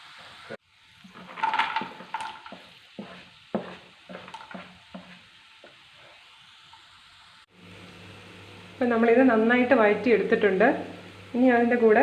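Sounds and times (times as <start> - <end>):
spatula strokes against pan: 0.0 - 6.6
food sizzling in a pan: 0.0 - 12.0.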